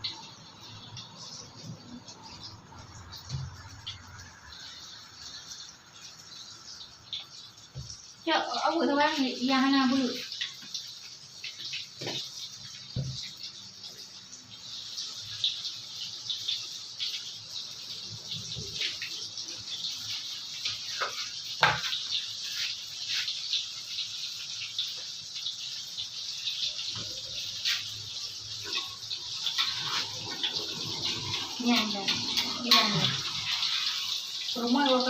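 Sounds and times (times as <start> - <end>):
bananas sizzling in hot oil: 0.0 - 35.0
oil popping: 20.7 - 22.2, 26.8 - 35.0.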